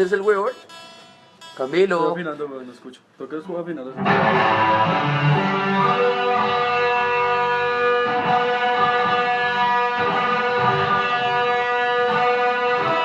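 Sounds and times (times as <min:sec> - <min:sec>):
guitar chords ringing: 0:04.0 - 0:13.0.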